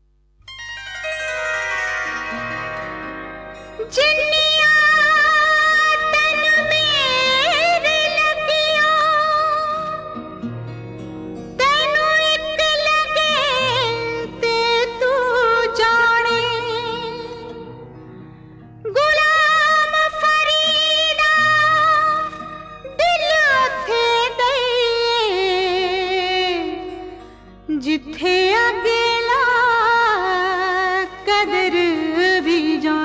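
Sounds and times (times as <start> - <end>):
soft musical backing: 0.4 - 33.0
person singing ornamented phrases: 3.8 - 10.1.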